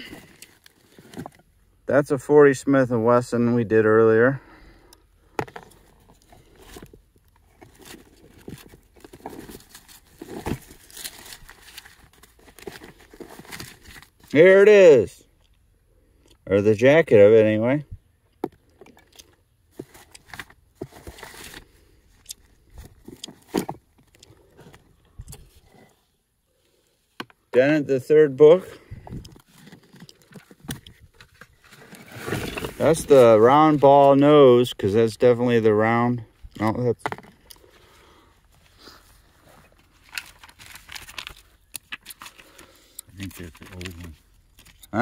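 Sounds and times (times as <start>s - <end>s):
book pages rustling: 5.5s - 14.4s, 19.7s - 21.8s, 29.3s - 34.0s, 38.6s - 44.8s
paper rustling: 39.5s - 44.8s.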